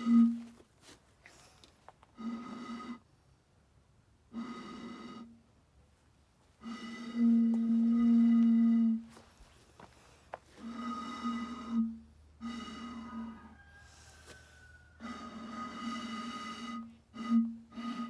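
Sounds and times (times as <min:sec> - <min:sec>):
bottle blown hooting tones: 0:00.0 - 0:00.6, 0:02.2 - 0:03.0, 0:06.6 - 0:09.3, 0:10.5 - 0:18.0.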